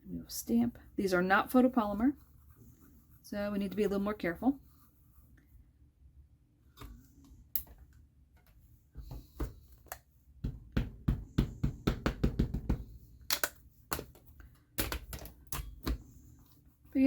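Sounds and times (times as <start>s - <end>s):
stamp knocking on ink pad: 10.4s - 12.8s.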